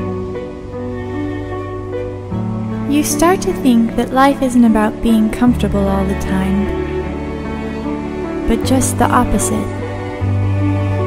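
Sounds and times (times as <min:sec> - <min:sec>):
gentle plucked notes: 0:01.9 - 0:10.3.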